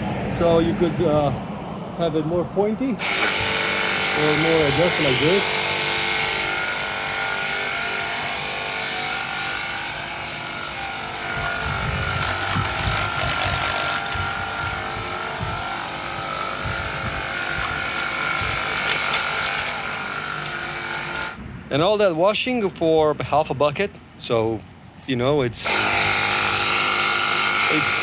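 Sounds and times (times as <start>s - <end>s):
pump motor whine: 3.0s - 21.4s.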